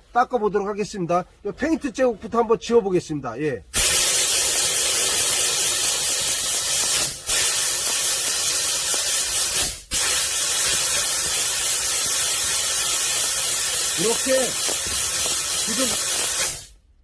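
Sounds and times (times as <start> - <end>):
loud steam jet hissing: 3.8 - 16.8.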